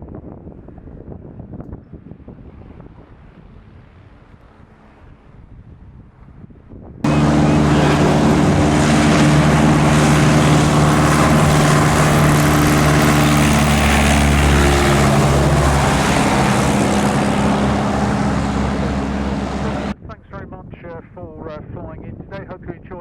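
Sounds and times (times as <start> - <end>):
propeller aircraft engine drone: 7.1 - 20.0.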